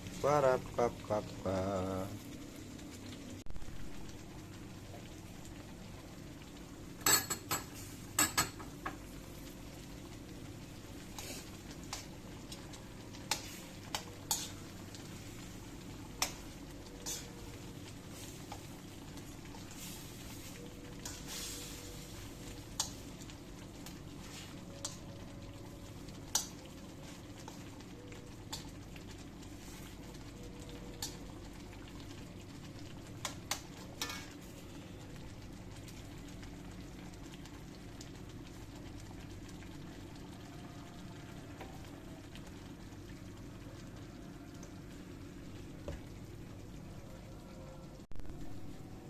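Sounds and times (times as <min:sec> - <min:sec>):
food cooking in a pan: 0:00.0 - 0:49.0
low steady hum: 0:00.0 - 0:49.0
utensils clinking against cookware: 0:07.0 - 0:08.6.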